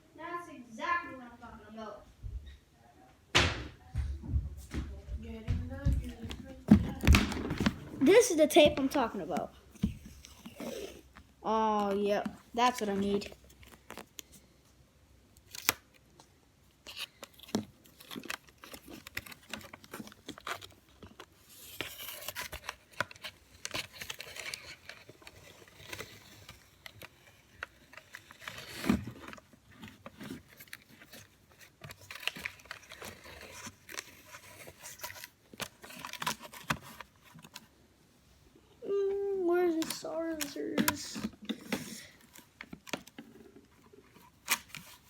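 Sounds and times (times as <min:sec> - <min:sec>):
loud thump: 0:03.3 - 0:05.0
cardboard handled and scraped: 0:17.9 - 0:37.7.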